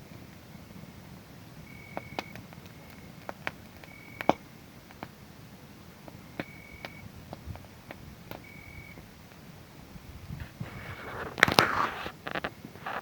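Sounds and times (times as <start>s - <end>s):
wood fire crackling and popping: 0.1s - 13.0s
cricket chirping: 1.6s - 4.5s, 6.2s - 7.1s, 8.3s - 9.2s.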